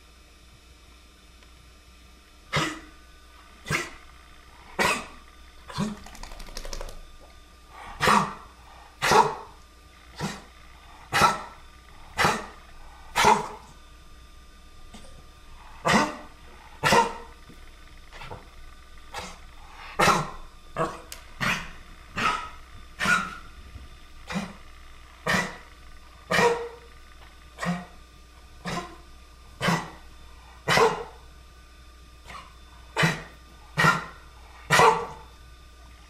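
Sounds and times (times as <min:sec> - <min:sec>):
dog coughing: 0:02.5 - 0:03.0, 0:03.6 - 0:04.0, 0:04.8 - 0:06.0, 0:08.0 - 0:08.4, 0:10.2 - 0:10.5, 0:12.2 - 0:12.6, 0:13.2 - 0:13.7, 0:15.8 - 0:17.3, 0:20.0 - 0:23.4, 0:24.3 - 0:24.6, 0:25.2 - 0:25.7, 0:26.3 - 0:26.8, 0:27.6 - 0:28.0, 0:28.6 - 0:29.0, 0:29.6 - 0:30.0, 0:30.6 - 0:31.1, 0:32.3 - 0:35.1.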